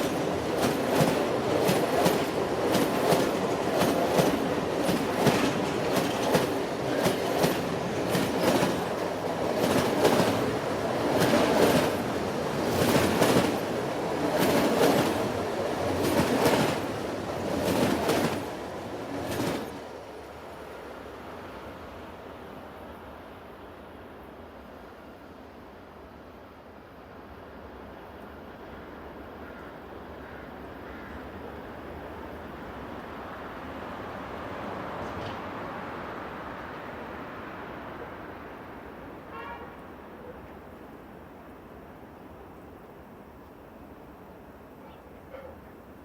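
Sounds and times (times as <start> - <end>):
train wheels clattering on rails: 0.0 - 19.8, 34.8 - 35.9
train rumble: 0.0 - 22.6, 30.0 - 46.0.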